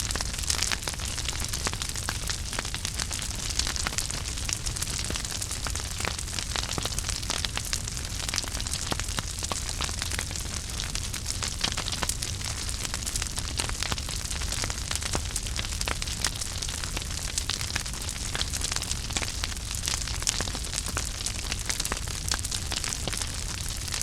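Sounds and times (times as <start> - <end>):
low rumble of flames: 0.0 - 24.0
wood fire crackling and popping: 0.0 - 24.0.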